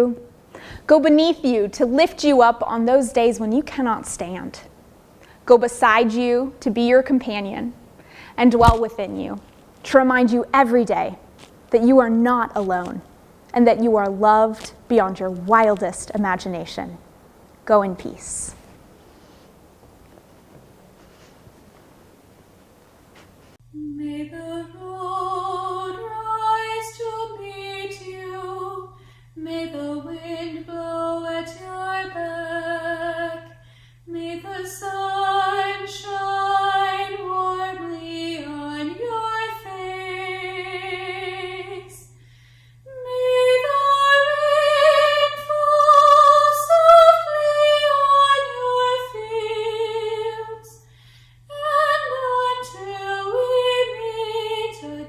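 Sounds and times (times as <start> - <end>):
steady low hum: 0.0 - 55.0
woman singing with vibrato: 42.9 - 50.8, 51.5 - 55.0.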